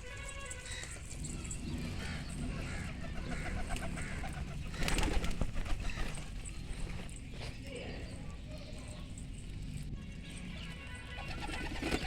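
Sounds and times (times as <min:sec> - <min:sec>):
pigeons cooing: 0:00.0 - 0:07.0, 0:10.6 - 0:12.0.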